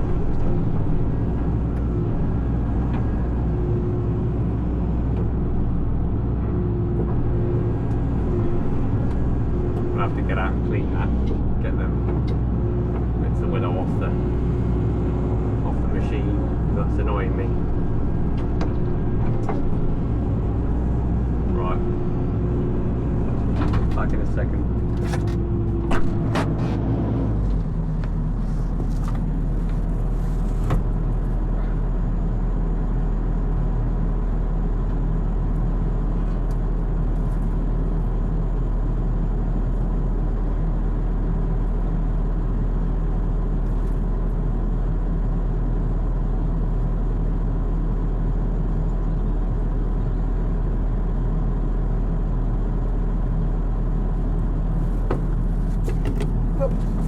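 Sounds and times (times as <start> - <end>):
diesel engine idling: 0.0 - 57.0
sharp clicks and knocks: 24.8 - 26.8, 55.0 - 57.0.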